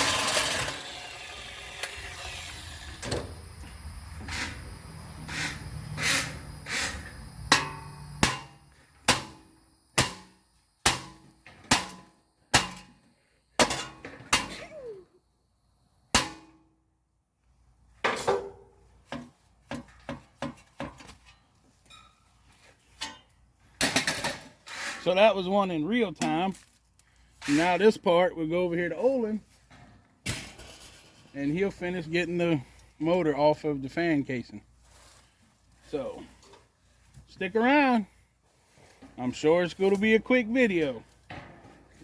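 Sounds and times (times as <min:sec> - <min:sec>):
hammer striking metal: 0:07.5 - 0:12.9.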